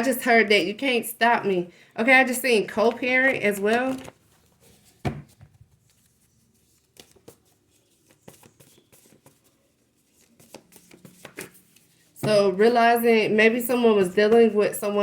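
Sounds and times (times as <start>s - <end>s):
cards being shuffled: 2.9s - 12.2s.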